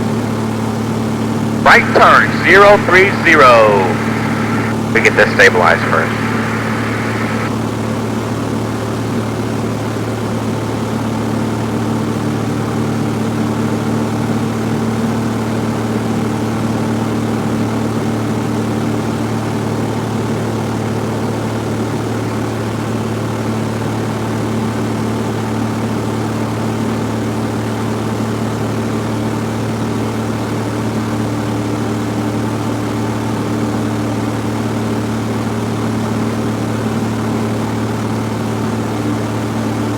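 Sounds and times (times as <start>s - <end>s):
propeller plane engine droning: 1.7s - 7.5s.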